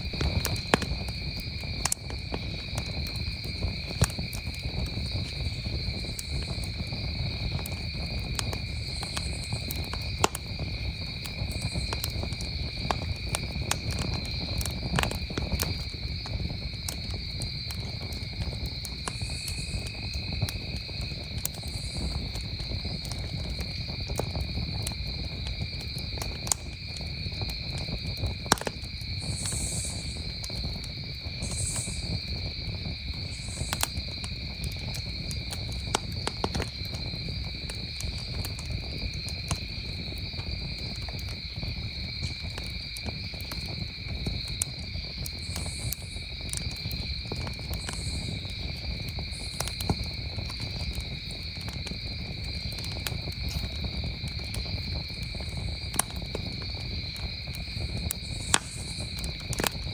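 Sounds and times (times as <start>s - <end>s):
campfire crackling and popping: 0.0s - 59.9s
crickets chirping: 0.0s - 59.9s.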